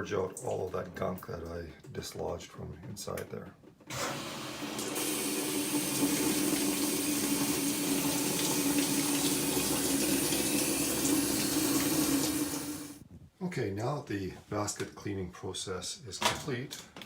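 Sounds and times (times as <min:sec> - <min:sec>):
water rushing in washing machine: 0:03.9 - 0:13.0.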